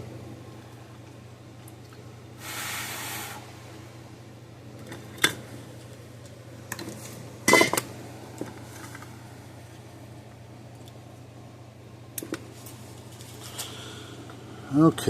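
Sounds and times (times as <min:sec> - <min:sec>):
steady low hum: 0:00.0 - 0:15.0
metal tools clattering on workbench: 0:07.5 - 0:07.8.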